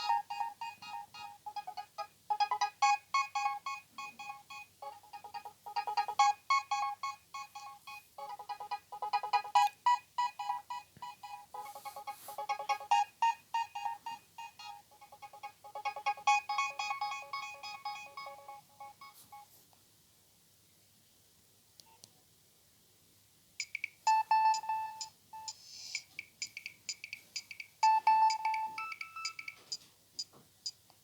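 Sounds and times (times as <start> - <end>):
mobile phone ringtone melody: 0.0 - 19.4, 23.7 - 29.8.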